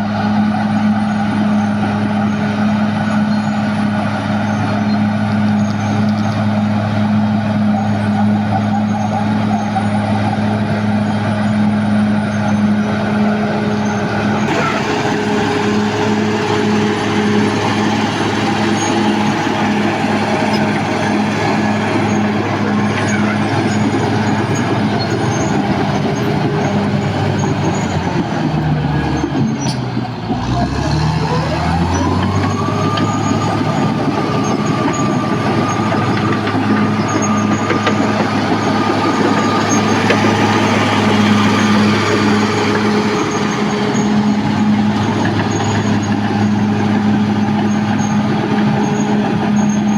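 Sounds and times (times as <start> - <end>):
bulldozer diesel engine running: 0.0 - 49.9.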